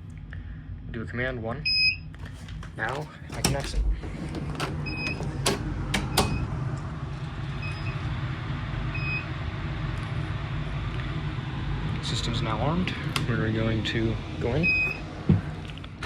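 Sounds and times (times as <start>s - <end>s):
steady low hum: 0.0s - 16.0s
keypad warning beeps: 4.8s - 6.5s.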